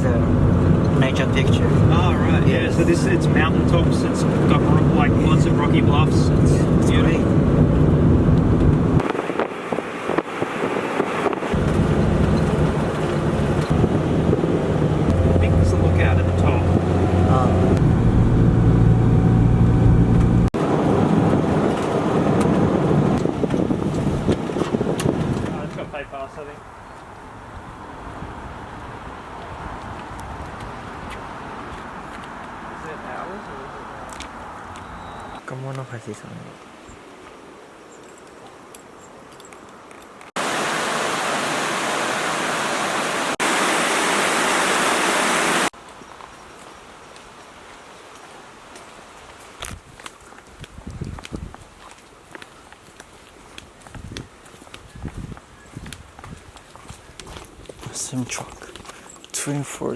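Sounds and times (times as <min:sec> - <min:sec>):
rough noisy rumble: 0:00.0 - 0:26.1
rushing water: 0:09.0 - 0:17.9, 0:40.3 - 0:45.8
low vehicle running noise: 0:10.6 - 0:23.7
quiet outdoor background: 0:21.4 - 0:59.9.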